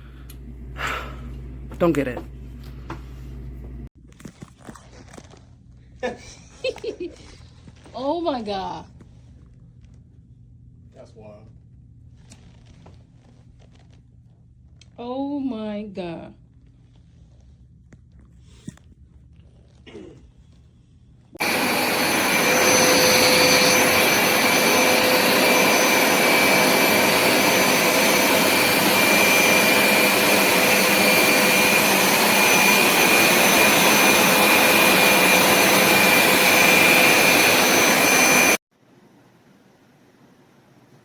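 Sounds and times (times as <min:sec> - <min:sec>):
carpet cleaner suction motor: 0:21.4 - 0:38.6.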